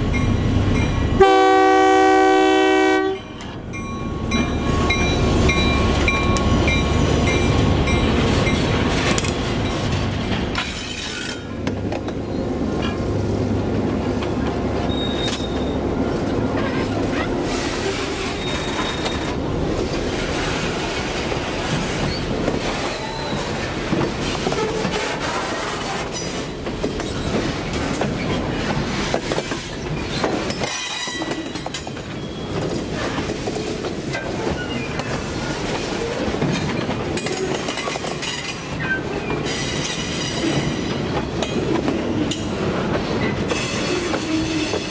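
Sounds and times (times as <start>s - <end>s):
train horn blast: 1.2s - 3.3s
squealing train wheels: 3.3s - 13.1s, 14.8s - 44.9s
train wheels clickety-clack: 4.3s - 44.9s.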